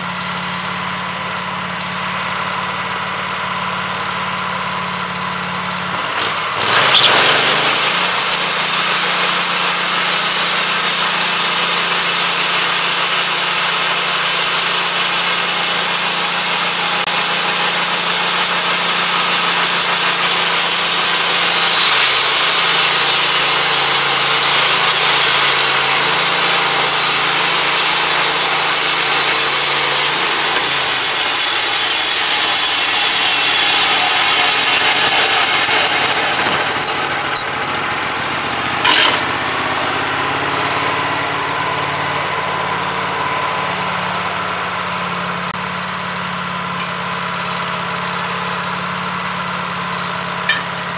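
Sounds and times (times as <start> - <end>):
sawmill engine droning: 0.0 - 50.9
band blade sawing hiss: 6.8 - 37.5.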